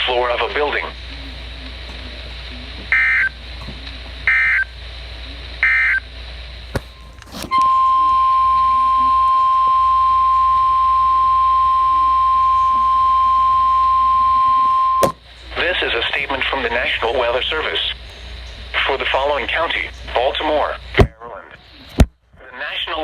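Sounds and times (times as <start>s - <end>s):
steady warning alarm tone: 2.6s - 3.5s, 4.2s - 4.8s, 5.6s - 6.2s, 6.9s - 20.8s.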